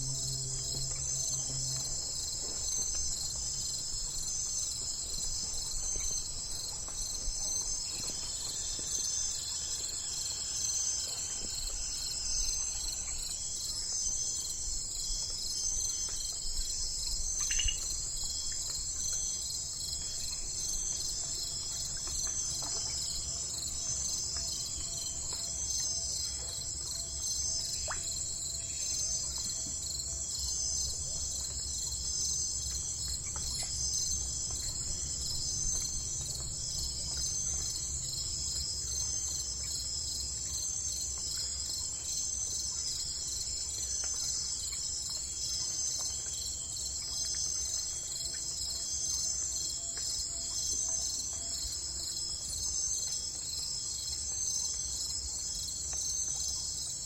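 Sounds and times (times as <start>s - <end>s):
low rumble: 0.0s - 3.2s
crickets trilling: 0.0s - 57.0s.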